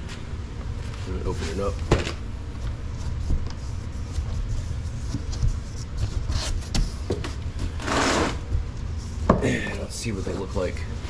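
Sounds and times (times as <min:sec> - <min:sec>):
rustles and crackles: 0:00.0 - 0:11.0.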